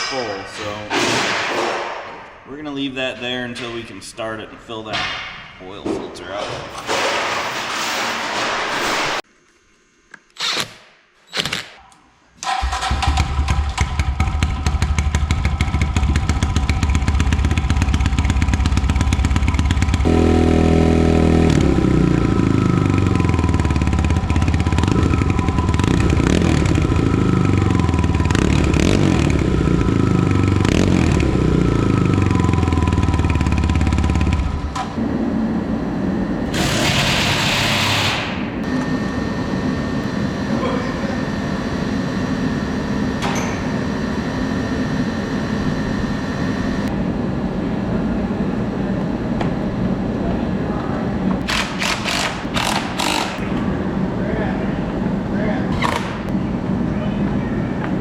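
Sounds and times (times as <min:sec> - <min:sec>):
single-cylinder engine idling: 0:12.5 - 0:20.1, 0:21.6 - 0:34.8.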